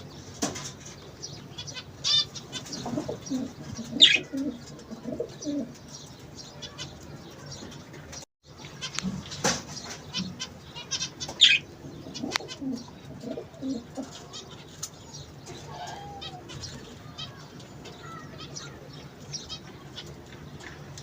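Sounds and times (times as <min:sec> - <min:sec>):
small birds chirping: 0:00.0 - 0:21.0
doves cooing: 0:02.0 - 0:05.9, 0:08.8 - 0:18.9.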